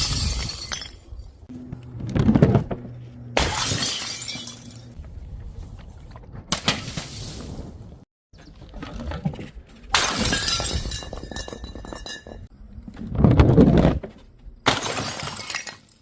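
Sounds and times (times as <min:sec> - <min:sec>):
glass shattering: 0:00.0 - 0:01.1, 0:03.4 - 0:05.0, 0:10.0 - 0:12.4, 0:14.7 - 0:16.0.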